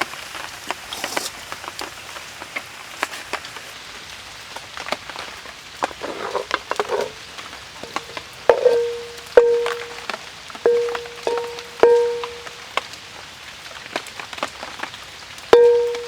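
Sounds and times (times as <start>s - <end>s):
food sizzling in hot oil: 0.0s - 3.9s, 5.9s - 10.0s, 10.6s - 12.6s, 15.5s - 16.0s.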